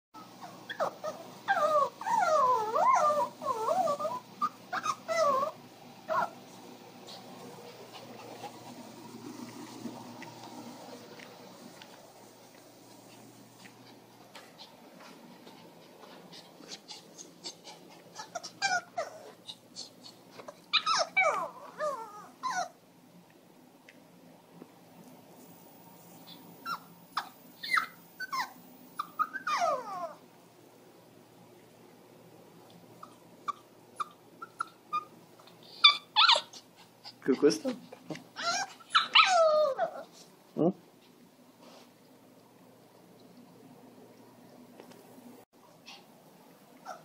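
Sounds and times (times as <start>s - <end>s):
dog yelping: 0.2s - 8.7s, 17.4s - 22.8s, 26.3s - 30.2s, 33.0s - 36.7s, 38.4s - 40.1s
dog whining: 0.2s - 14.8s, 16.3s - 22.8s, 25.4s - 30.2s, 32.9s - 37.2s, 38.3s - 40.2s.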